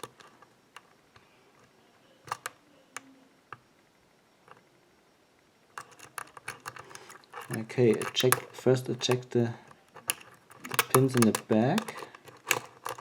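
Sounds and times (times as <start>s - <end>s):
lock pick metallic clicks: 5.8s - 9.3s, 10.0s - 13.0s.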